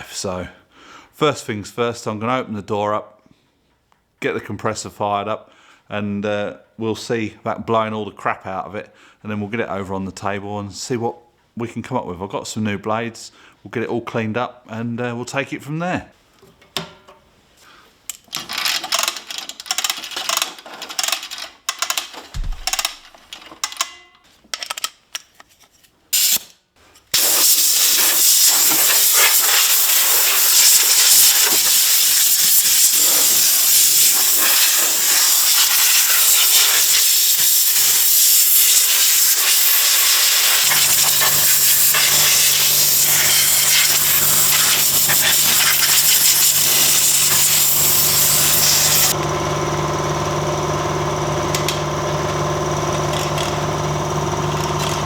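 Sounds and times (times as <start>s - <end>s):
compressed air blow gun hissing: 27.2s - 49.2s.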